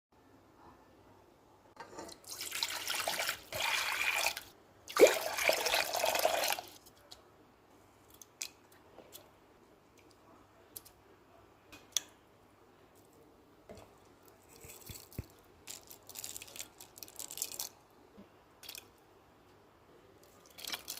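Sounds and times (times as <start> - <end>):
water pouring: 2.0 - 6.8.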